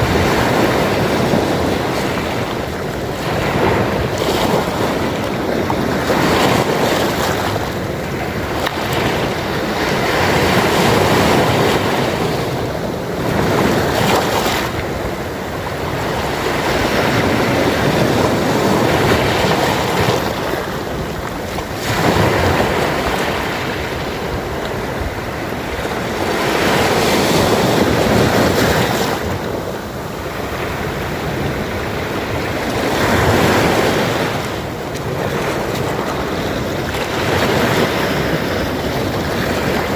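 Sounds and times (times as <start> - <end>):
sea waves breaking: 0.0 - 39.9.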